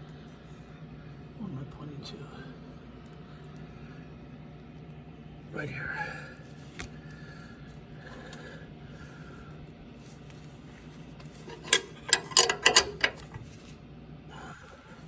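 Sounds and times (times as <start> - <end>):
low steady hum: 0.0 - 15.0
ratcheting wrench clicking: 11.5 - 13.4.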